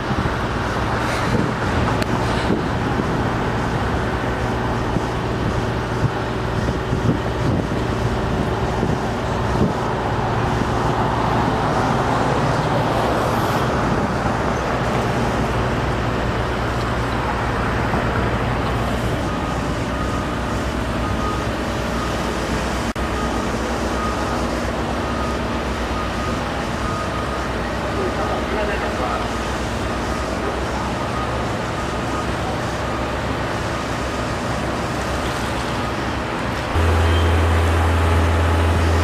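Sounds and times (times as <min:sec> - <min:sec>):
heavy engine low hum: 0:00.0 - 0:39.0
road traffic: 0:00.0 - 0:39.0
faint high beep: 0:36.8 - 0:37.6.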